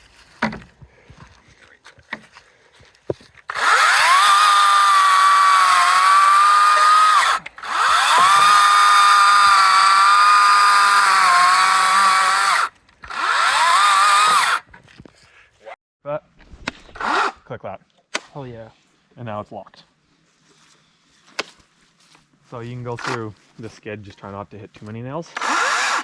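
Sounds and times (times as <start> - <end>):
electric chainsaw motor whining: 3.5 - 14.7, 25.3 - 26.0.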